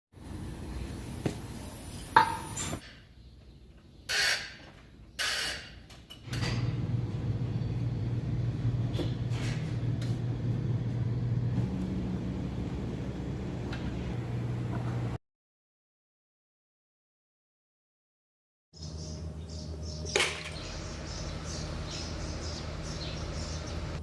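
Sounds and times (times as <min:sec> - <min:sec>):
truck engine idling: 0:20.6 - 0:24.0.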